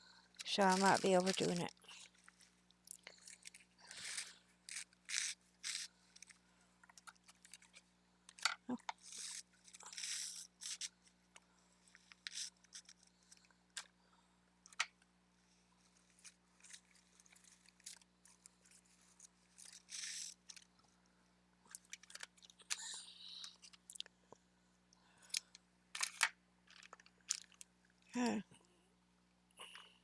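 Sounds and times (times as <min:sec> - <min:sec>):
plastic bags rustling and crinkling: 0:00.4 - 0:02.4.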